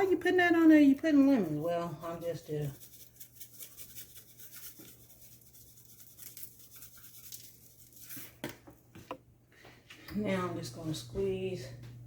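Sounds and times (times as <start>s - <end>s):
steady low hum: 9.1s - 12.0s.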